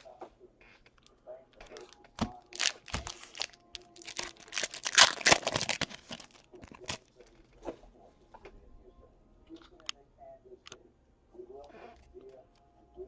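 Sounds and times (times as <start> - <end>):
packaging torn and crinkled: 1.7 - 7.1.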